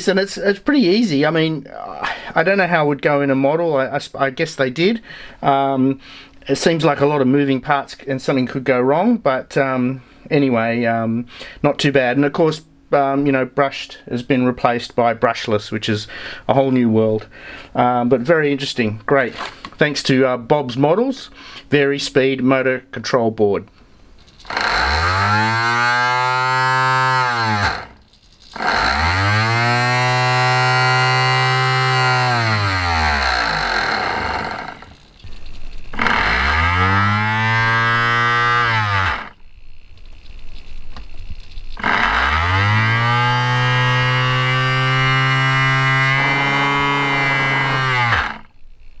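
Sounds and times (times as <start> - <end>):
electric motor whine: 24.4 - 48.6.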